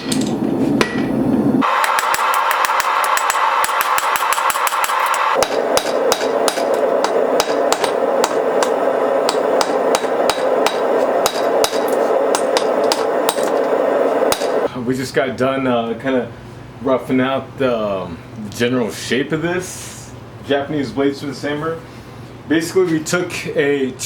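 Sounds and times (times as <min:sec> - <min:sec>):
hammer striking steel on anvil: 0:00.0 - 0:14.7
steady rushing noise: 0:00.8 - 0:14.7.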